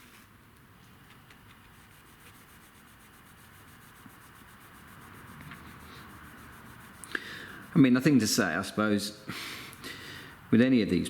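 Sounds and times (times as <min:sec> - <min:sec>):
applicator rubbing car paintwork: 0:01.4 - 0:08.3.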